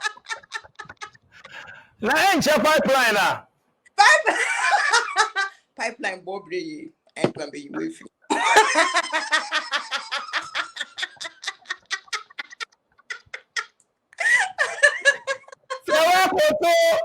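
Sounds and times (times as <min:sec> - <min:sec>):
person laughing heartily: 0:00.0 - 0:01.8
person speaking: 0:01.5 - 0:03.4, 0:06.4 - 0:08.1, 0:15.9 - 0:17.0.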